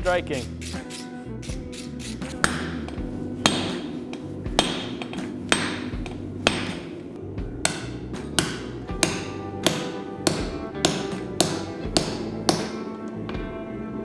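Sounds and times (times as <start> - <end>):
hammer ringing on anvil: 2.4 - 4.0, 4.6 - 7.0, 7.6 - 12.9.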